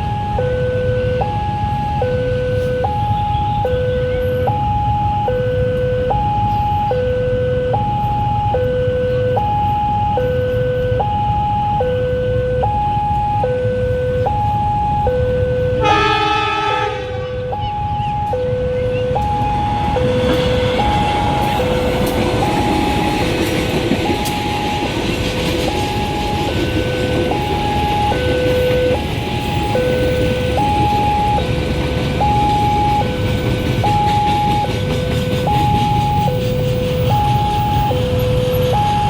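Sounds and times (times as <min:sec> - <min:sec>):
two-tone warning siren: 0:00.0 - 0:39.0.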